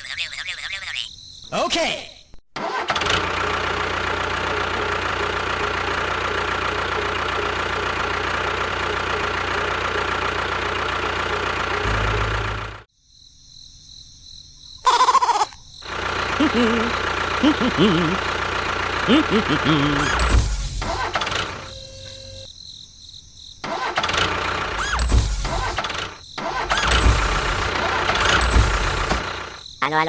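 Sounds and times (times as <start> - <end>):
small motor humming: 15.9 - 22.5, 24.3 - 29.5.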